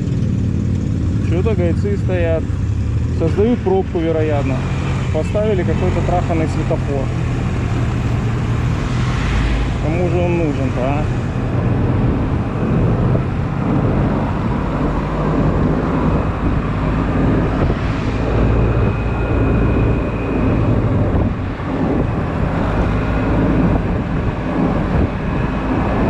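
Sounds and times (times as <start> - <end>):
scooter engine rumbling: 0.0 - 26.0
wind buffeting microphone: 6.8 - 26.0.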